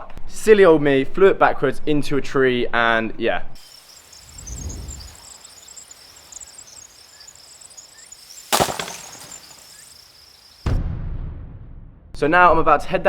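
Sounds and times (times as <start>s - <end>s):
insects chirping: 3.6s - 10.8s
sharp crack: 6.4s - 10.8s.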